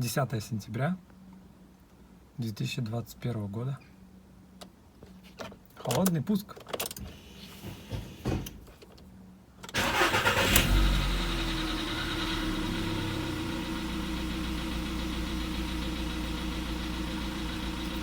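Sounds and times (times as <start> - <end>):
car engine starting and idling: 9.7 - 18.0.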